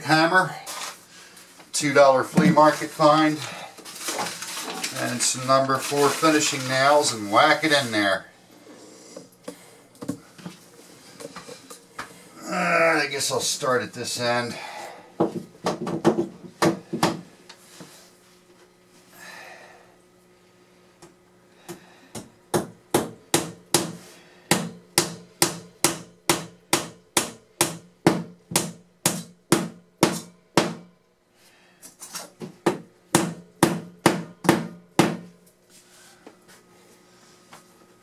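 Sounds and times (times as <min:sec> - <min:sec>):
hammer driving nails into wood: 0:22.6 - 0:30.8.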